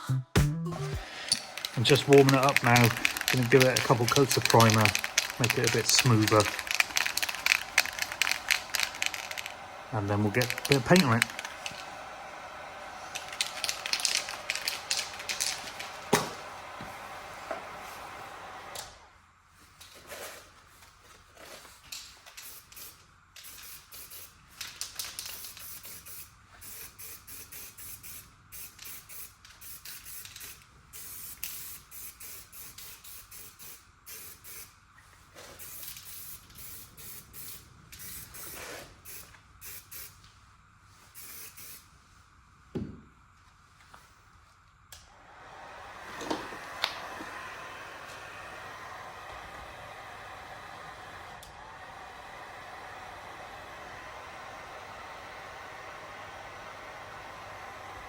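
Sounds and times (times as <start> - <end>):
spray can bursts: 0.8 - 11.9, 13.0 - 16.4, 22.3 - 34.8, 35.5 - 40.2, 41.1 - 41.9
steady blowing hiss with hum: 0.8 - 58.0.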